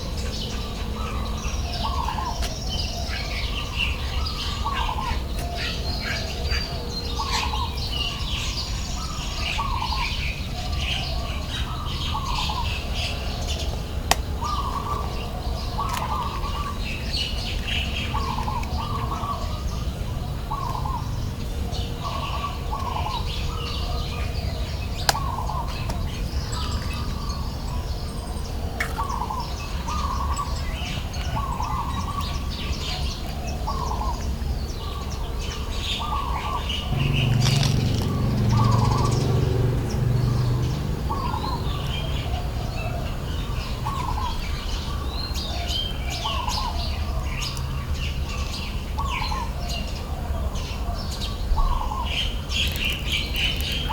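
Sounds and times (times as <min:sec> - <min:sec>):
birds calling: 0:00.0 - 0:53.9
steady low rumble: 0:36.8 - 0:45.0
high bird chirps: 0:52.2 - 0:53.9
sharp clicks: 0:52.5 - 0:53.9.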